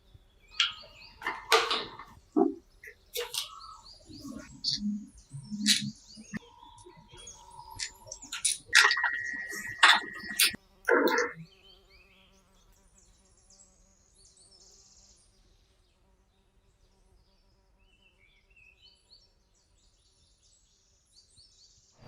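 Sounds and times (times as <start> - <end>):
faint high chirping: 0.0 - 12.4.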